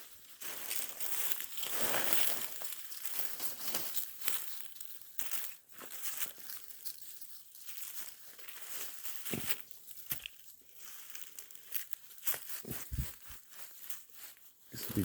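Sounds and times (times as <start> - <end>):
footsteps crunching through dry leaves: 7.8 - 15.0.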